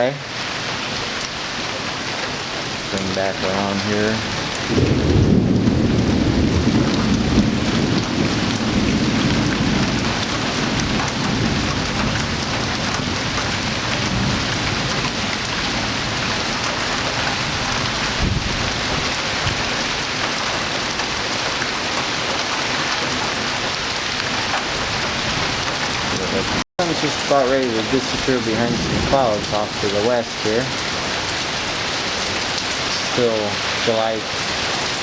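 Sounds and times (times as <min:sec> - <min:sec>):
steady rain falling: 0:00.0 - 0:35.0
rolling thunder: 0:04.4 - 0:20.1, 0:23.1 - 0:31.4.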